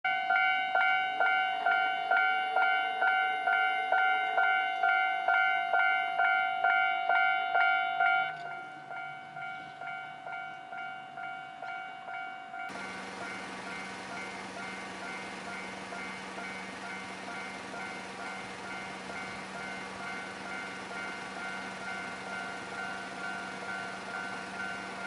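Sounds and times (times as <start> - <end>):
railroad crossing warning bell: 0.1 - 25.0.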